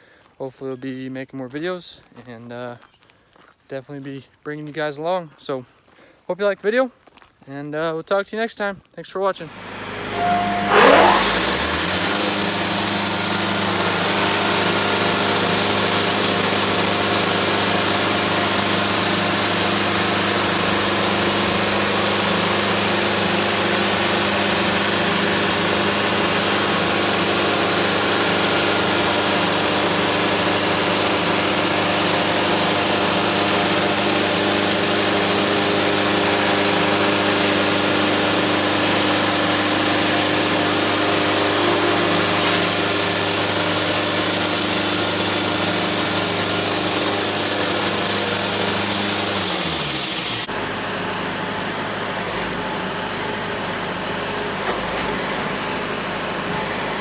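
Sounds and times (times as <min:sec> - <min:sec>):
saw blade hiss: 0:09.4 - 0:50.5
sawmill engine running: 0:09.4 - 0:57.0.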